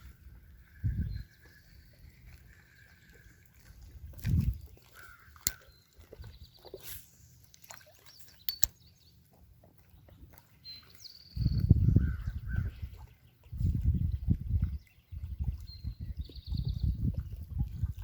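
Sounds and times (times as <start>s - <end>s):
sharp clicks: 8.5s - 8.7s.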